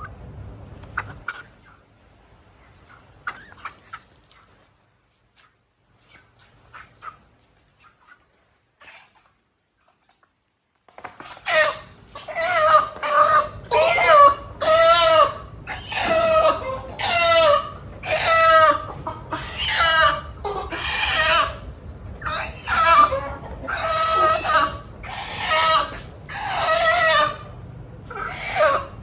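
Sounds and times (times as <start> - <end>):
chicken squawking: 1.0 - 1.8, 2.9 - 4.6, 6.1 - 7.2, 11.2 - 29.0.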